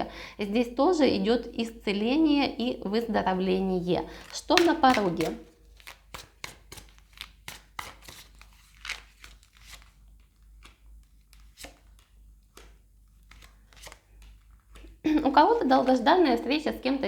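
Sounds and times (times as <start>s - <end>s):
cards flicking and slapping: 4.2s - 15.0s.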